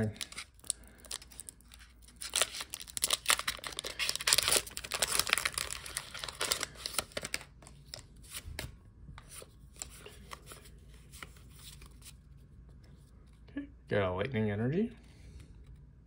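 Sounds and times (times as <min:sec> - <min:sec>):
foil wrapper crinkling and tearing: 0:00.0 - 0:08.1
cards being slid and handled: 0:08.2 - 0:12.4.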